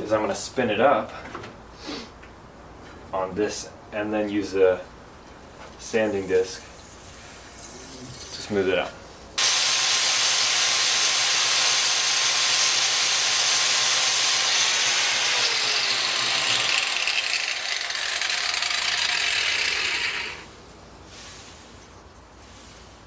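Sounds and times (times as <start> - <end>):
abrasive sanding hiss: 9.4 - 17.3, 18.9 - 23.0
low electric motor hum: 14.4 - 20.6.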